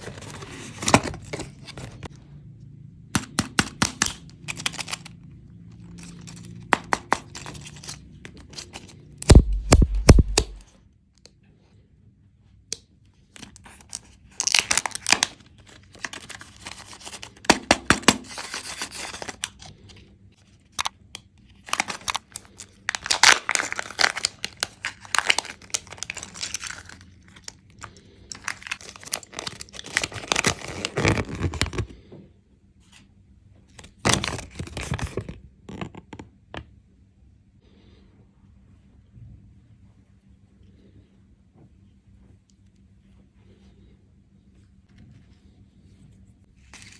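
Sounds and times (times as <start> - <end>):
wrappers torn and crinkled: 3.2 - 5.2, 5.8 - 10.6, 13.4 - 19.8, 21.5 - 32.0, 33.8 - 35.9.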